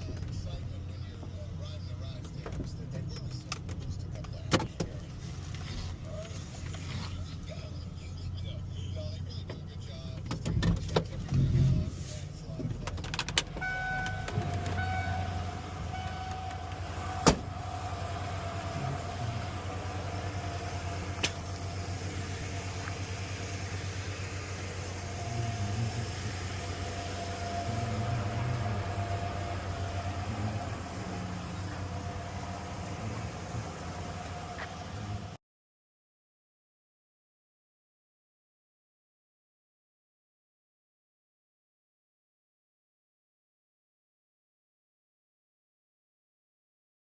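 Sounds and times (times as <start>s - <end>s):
pickup engine running: 0.0s - 35.4s.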